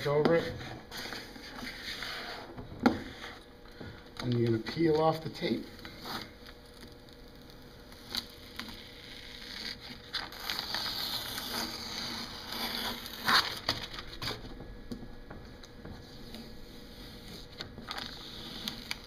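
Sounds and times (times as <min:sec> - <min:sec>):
tape ripping: 0:05.8 - 0:14.4, 0:17.2 - 0:19.0
tape peeling off: 0:05.8 - 0:14.5, 0:15.6 - 0:19.0.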